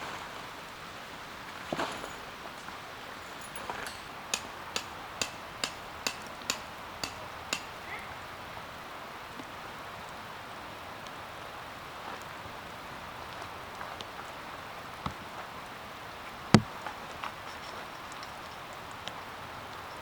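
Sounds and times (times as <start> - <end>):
tent peg being hammered: 3.3 - 8.1.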